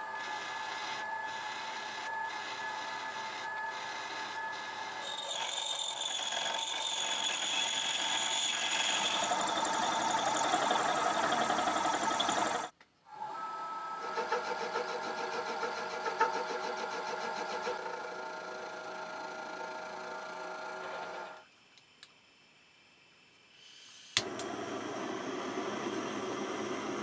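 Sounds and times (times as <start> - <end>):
machine tool motor whine: 0.0 - 21.4
machine pulsing: 5.8 - 12.7.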